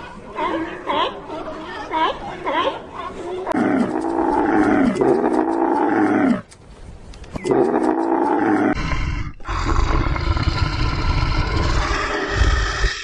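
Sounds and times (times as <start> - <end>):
deep rough growling roar: 7.5 - 13.0.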